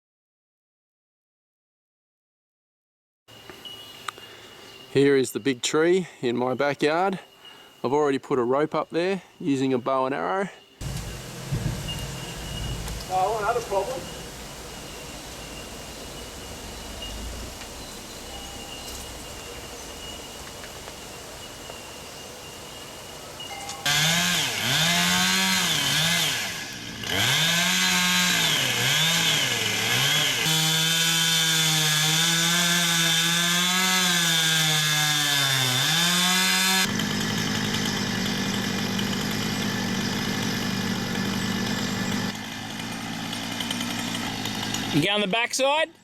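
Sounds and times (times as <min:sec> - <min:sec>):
chainsaw cutting wood: 0:10.8 - 0:18.2, 0:23.7 - 0:45.3.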